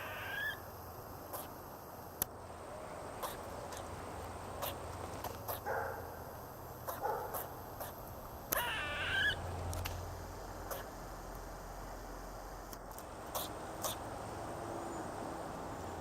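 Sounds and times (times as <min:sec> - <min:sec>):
squirrel whiny cries: 0:00.0 - 0:00.6, 0:06.9 - 0:09.4
sharp clicks: 0:06.8 - 0:08.8.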